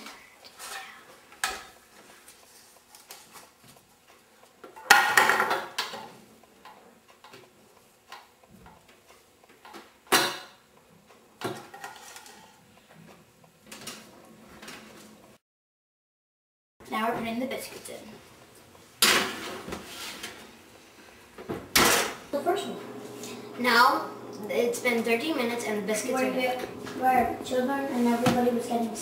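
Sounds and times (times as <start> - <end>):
pans and utensils clanking: 11.4 - 12.6, 19.0 - 20.5, 21.7 - 22.2.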